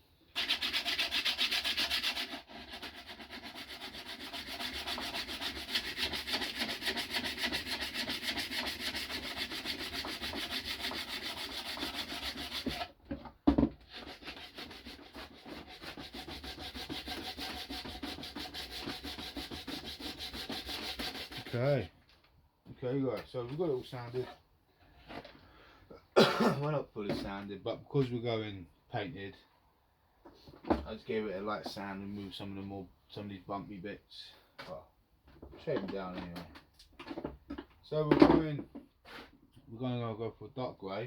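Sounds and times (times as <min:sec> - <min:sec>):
sandpaper rasping on wood: 0:00.3 - 0:12.9, 0:13.9 - 0:21.7.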